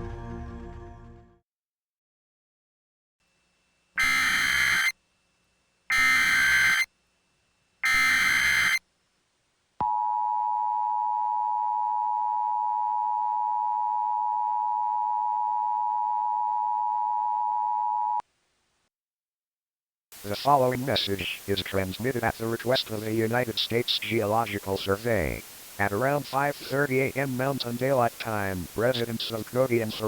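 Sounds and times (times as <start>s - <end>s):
two-tone attention signal: 4.0s - 4.9s
data header tone bursts: 4.0s - 5.0s, 5.9s - 6.9s, 7.8s - 8.8s.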